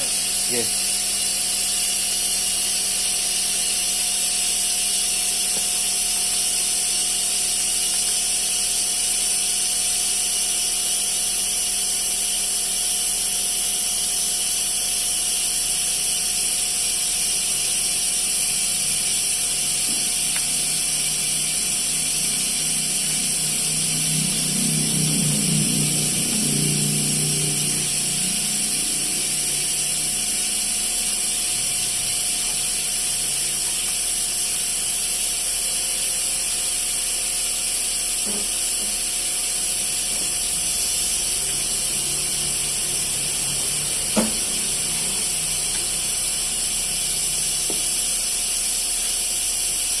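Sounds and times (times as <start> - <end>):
machine hiss and hum: 0.0 - 50.0
low pulsing sound: 18.4 - 34.1, 38.9 - 48.4.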